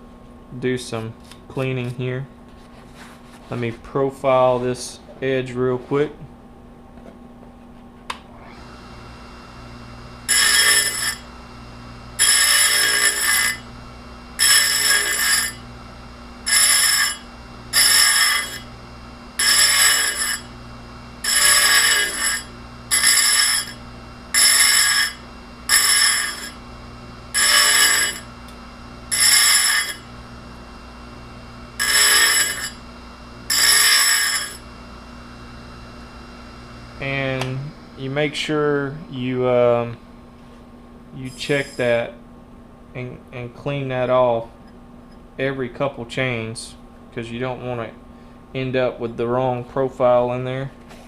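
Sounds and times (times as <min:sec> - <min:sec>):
chain grinder grinding: 0:10.2 - 0:11.3, 0:12.2 - 0:13.7, 0:14.4 - 0:15.6, 0:16.4 - 0:18.7, 0:19.4 - 0:20.6, 0:21.2 - 0:26.6, 0:27.3 - 0:28.3, 0:29.1 - 0:30.1, 0:31.8 - 0:32.8, 0:33.5 - 0:34.6.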